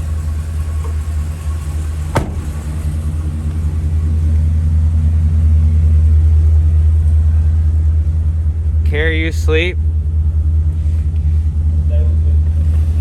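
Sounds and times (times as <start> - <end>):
truck engine rumble: 0.0 - 13.0.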